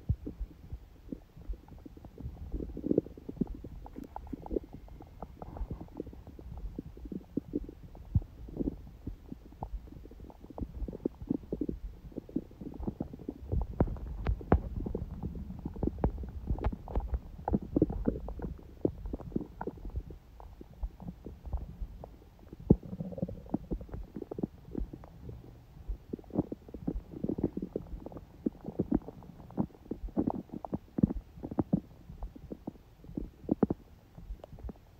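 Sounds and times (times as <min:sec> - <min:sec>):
stomach gurgling and rumbling: 0:00.0 - 0:34.9.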